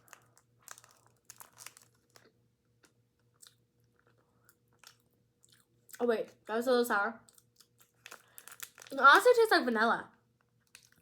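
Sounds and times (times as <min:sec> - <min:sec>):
chewing mouth clicks and smacks: 0:02.8 - 0:06.0.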